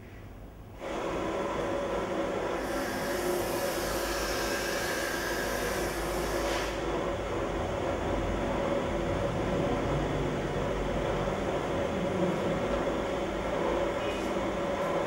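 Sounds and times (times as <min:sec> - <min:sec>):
motor and hydraulic pump running: 0:00.7 - 0:15.0
hiss: 0:02.6 - 0:06.9.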